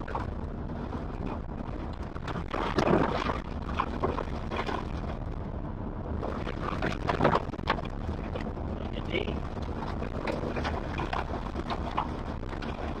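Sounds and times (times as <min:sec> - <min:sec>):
mud and water splashing: 0:00.0 - 0:05.2, 0:06.2 - 0:13.0
truck engine and tyres rumbling: 0:00.0 - 0:13.0.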